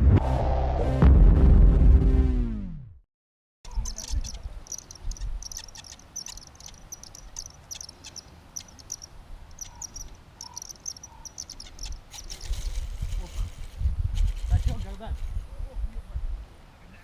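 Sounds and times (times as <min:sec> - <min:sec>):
insects chirping: 0:03.7 - 0:13.0.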